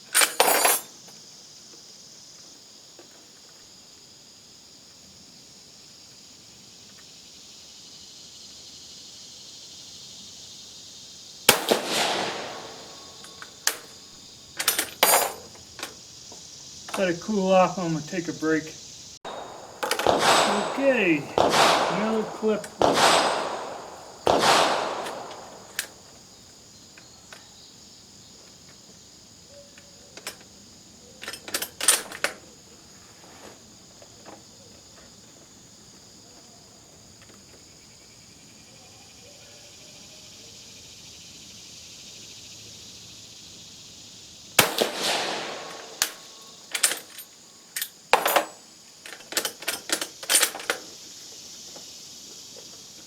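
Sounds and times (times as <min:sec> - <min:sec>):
insects buzzing: 0:00.0 - 0:53.0
rifle shot: 0:11.5 - 0:13.8, 0:19.3 - 0:26.1, 0:44.6 - 0:46.4
rifle action clicking: 0:19.3 - 0:25.9.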